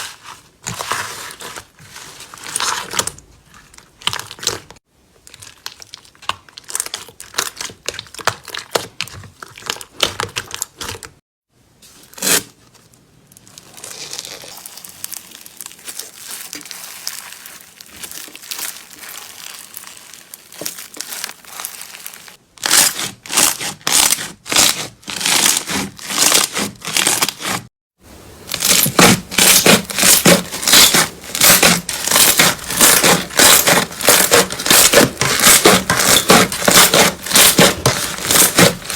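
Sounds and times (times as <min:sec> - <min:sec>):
slime squeezed crackling: 0:13.2 - 0:27.2, 0:28.5 - 0:38.9.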